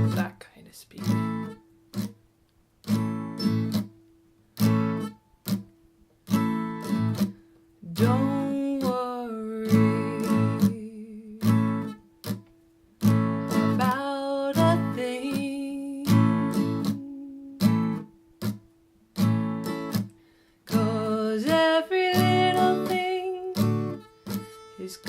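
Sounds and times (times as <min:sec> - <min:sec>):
acoustic guitar reggae strum: 0:00.0 - 0:00.4, 0:01.0 - 0:02.2, 0:02.8 - 0:04.0, 0:04.6 - 0:25.0
person humming: 0:13.8 - 0:17.8.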